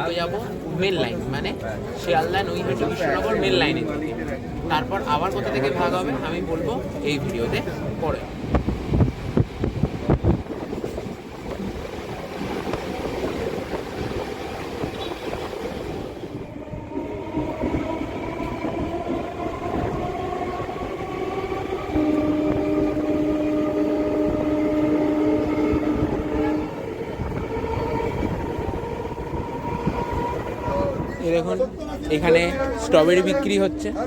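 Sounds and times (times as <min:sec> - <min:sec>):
electric train rumble and whine: 0:00.0 - 0:34.0
train horn: 0:14.8 - 0:18.9, 0:19.7 - 0:31.4, 0:32.4 - 0:34.0.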